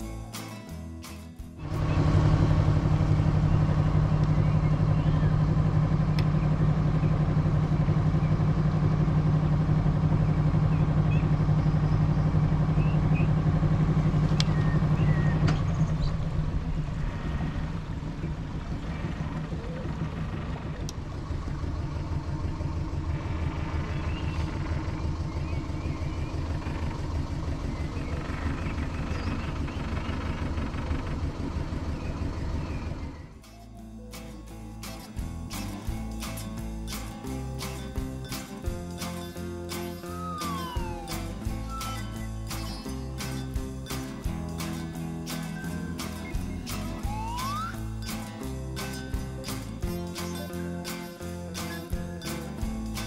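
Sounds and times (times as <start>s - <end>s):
boat engine running: 1.5s - 53.0s.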